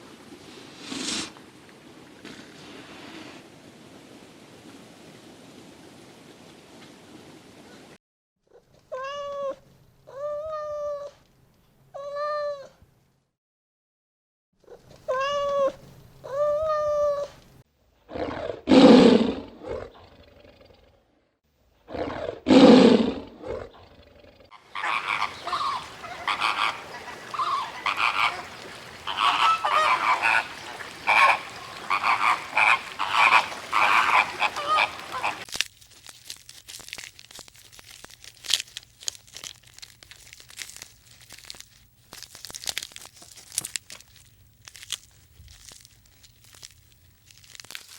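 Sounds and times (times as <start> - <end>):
rapid animal chattering: 24.4 - 35.5
drawn-out pitched animal calls: 24.5 - 35.5
harsh noisy animal calls: 24.5 - 35.5.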